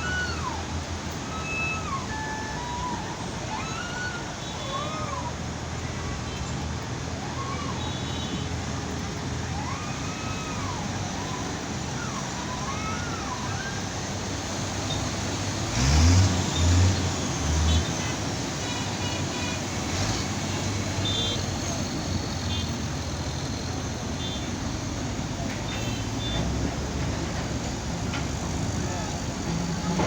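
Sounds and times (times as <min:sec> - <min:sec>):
loud low engine surges: 0:00.0 - 0:30.0
road traffic: 0:00.0 - 0:30.0
siren-like tone: 0:01.2 - 0:05.1
heavy machinery noise: 0:08.4 - 0:30.0.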